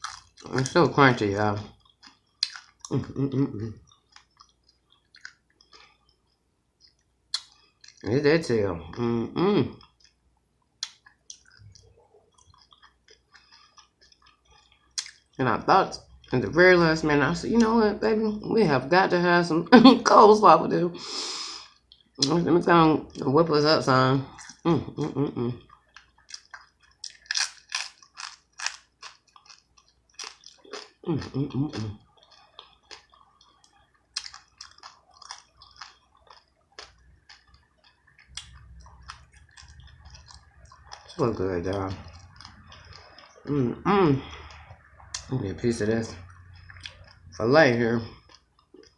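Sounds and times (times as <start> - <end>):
chewing crunchy fried fish: 0.0 - 8.2, 8.8 - 17.8, 23.0 - 48.9
wet mouth clicks: 3.8 - 8.0, 10.8 - 15.3.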